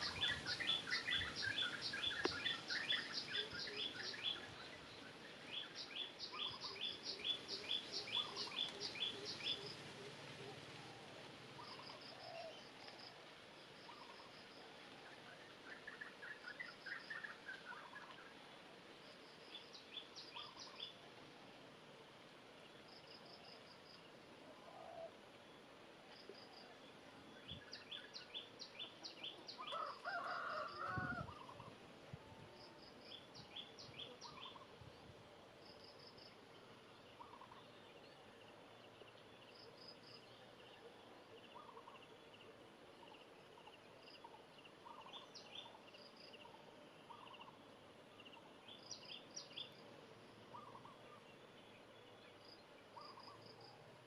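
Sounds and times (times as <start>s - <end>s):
lower bird call: 0.0s - 13.0s
faint bird chirps: 0.0s - 21.2s, 22.6s - 54.0s.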